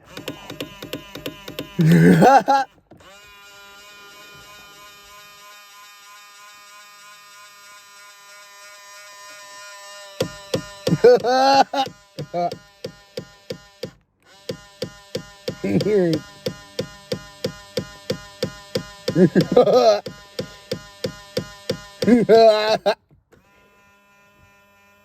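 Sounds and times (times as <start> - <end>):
mirror motor electric whine: 0.0 - 25.0.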